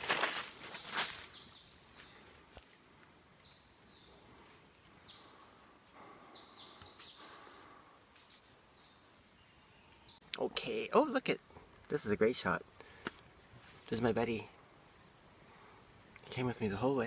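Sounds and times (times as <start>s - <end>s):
footsteps on trail: 0.0s - 3.1s
insects trilling: 0.0s - 17.0s.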